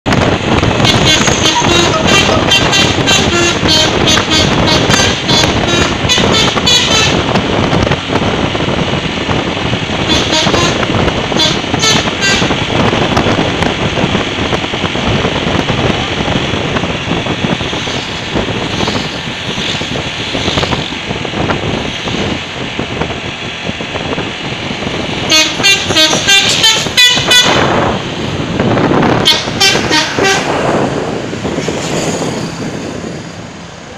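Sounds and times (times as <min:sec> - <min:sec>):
vehicle noise: 0:00.0 - 0:33.9
bus horn playing multi-tone tune: 0:00.8 - 0:07.4, 0:10.0 - 0:12.6, 0:25.2 - 0:27.9, 0:29.2 - 0:30.6.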